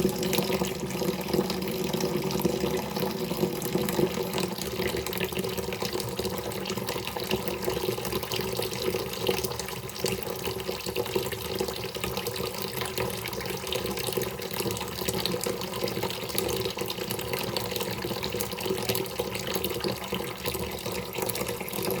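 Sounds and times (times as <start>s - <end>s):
running water splashing: 0.0s - 7.2s.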